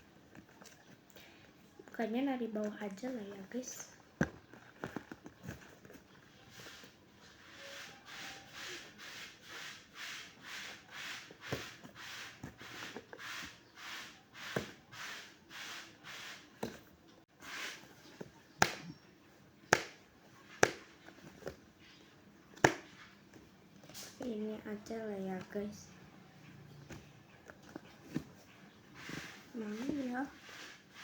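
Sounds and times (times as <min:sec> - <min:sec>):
packaging rustling and rubbing: 0:02.8 - 0:09.9.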